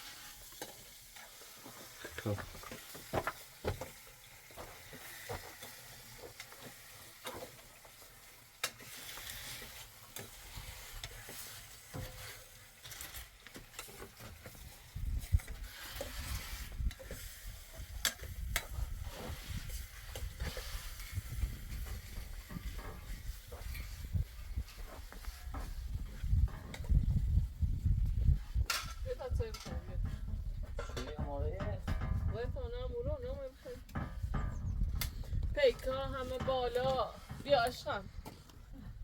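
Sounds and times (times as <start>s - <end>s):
vegetables sizzling in a pan: 0.0s - 13.8s.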